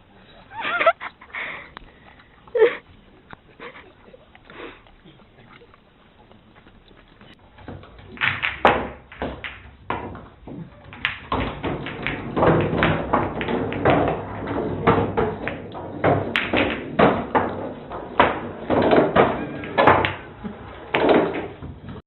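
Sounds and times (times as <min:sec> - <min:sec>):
rapid taps and thumps: 0:05.5 - 0:22.0.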